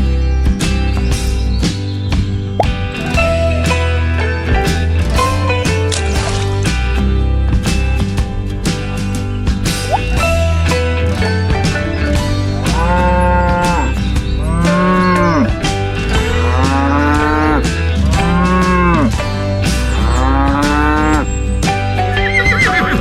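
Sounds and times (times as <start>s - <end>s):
background music with beat: 11.6s - 22.2s
moo-like calls: 12.6s - 21.3s.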